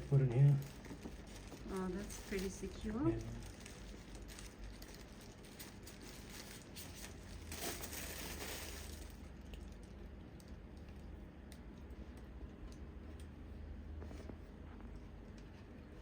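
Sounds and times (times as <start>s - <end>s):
packaging rustling: 0.1s - 9.9s.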